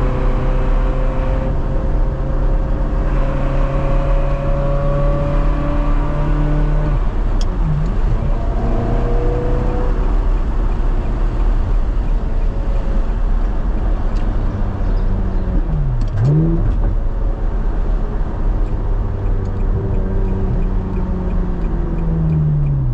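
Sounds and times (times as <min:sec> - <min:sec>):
sports car engine revving: 0:00.0 - 0:17.0.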